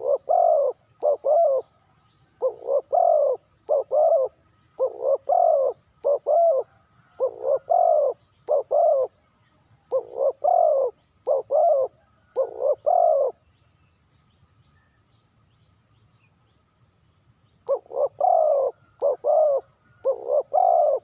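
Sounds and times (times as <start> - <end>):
dove cooing: 0.0 - 9.2, 9.8 - 13.4, 17.6 - 21.0.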